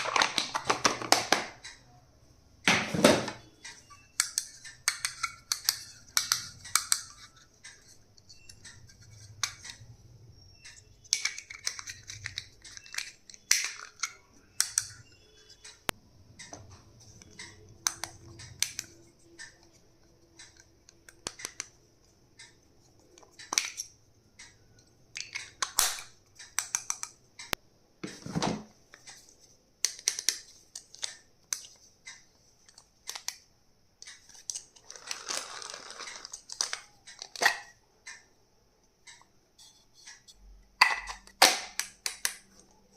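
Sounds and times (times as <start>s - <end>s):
small plastic items clicking: 3.3s - 10.0s, 10.6s - 16.5s, 17.1s - 21.8s, 28.9s - 38.3s, 41.1s - 42.7s.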